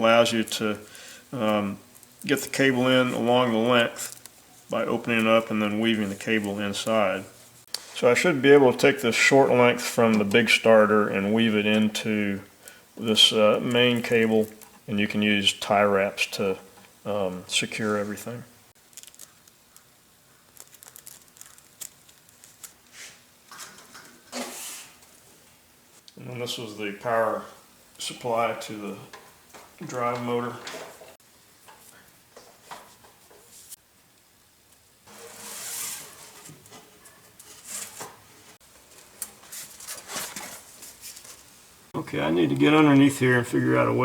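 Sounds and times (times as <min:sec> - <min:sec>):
cable sleeving crinkling and rustling: 0:00.0 - 0:08.1, 0:13.0 - 0:14.9, 0:17.8 - 0:25.2, 0:35.1 - 0:41.6.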